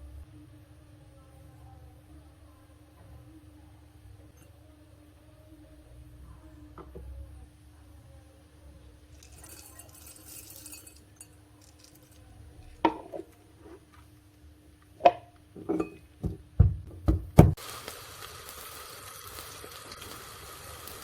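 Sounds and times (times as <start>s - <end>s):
dishes and utensils clinking: 9.1s - 13.3s, 15.0s - 16.1s
steady hiss: 17.5s - 21.0s.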